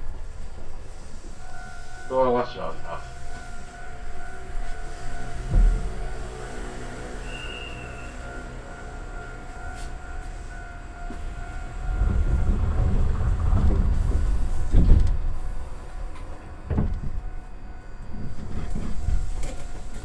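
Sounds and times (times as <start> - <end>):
heavy train knocks: 0.0 - 20.0
train rumbling: 0.0 - 20.0.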